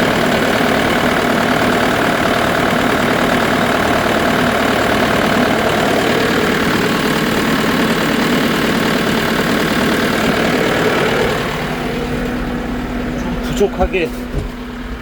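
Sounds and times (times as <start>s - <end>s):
tractor diesel engine running: 0.0s - 15.0s.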